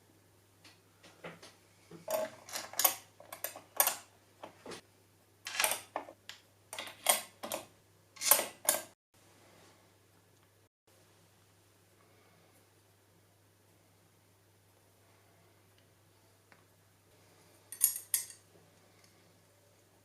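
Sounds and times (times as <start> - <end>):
computer parts clicking and rattling: 5.5 - 6.1, 6.8 - 9.0.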